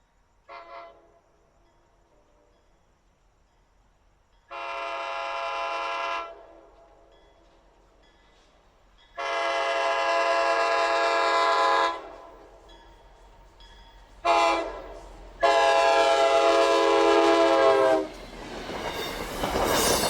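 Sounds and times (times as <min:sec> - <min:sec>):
locomotive air horn blasts: 0:04.5 - 0:06.5, 0:09.2 - 0:12.2, 0:14.2 - 0:14.8, 0:15.4 - 0:18.1.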